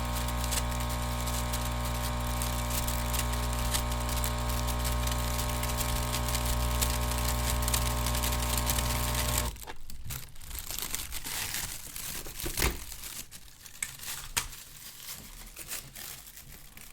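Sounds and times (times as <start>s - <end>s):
airflow hiss: 0.0s - 9.5s
air pump humming: 0.0s - 9.6s
bag crinkling and rustling: 9.4s - 16.9s.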